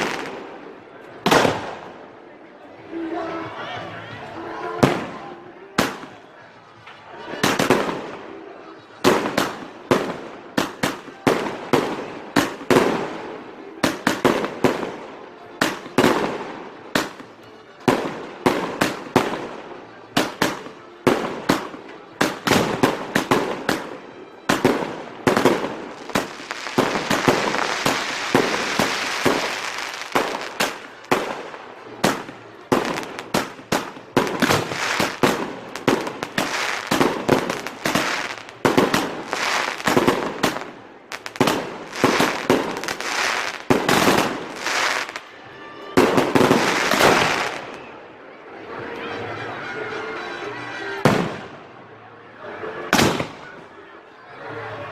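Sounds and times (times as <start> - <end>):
firework bangs echoing: 1.2 - 1.9, 20.2 - 45.2, 52.9 - 53.5
firework crackling hiss: 26.1 - 31.5.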